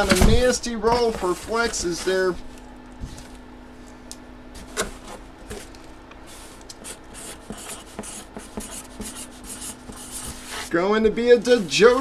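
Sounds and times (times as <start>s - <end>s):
box rubbing and scraping: 0.0s - 2.4s.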